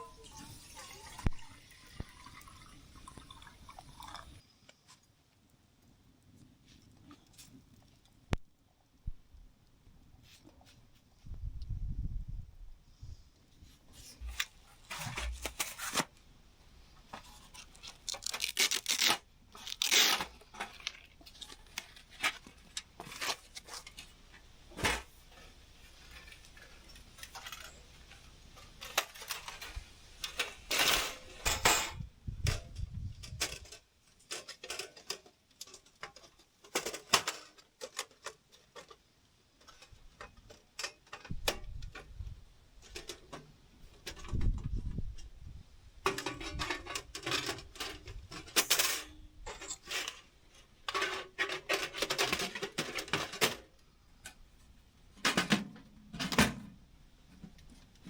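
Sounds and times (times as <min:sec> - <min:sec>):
objects clicking and clattering: 0:17.1 - 0:42.1, 0:46.1 - 0:54.4.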